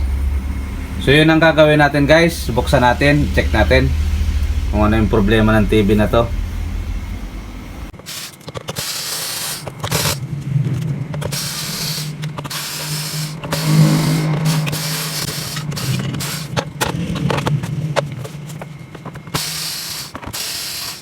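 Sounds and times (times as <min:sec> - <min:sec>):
small motor whirring: 0:11.2 - 0:16.7, 0:19.3 - 0:21.0.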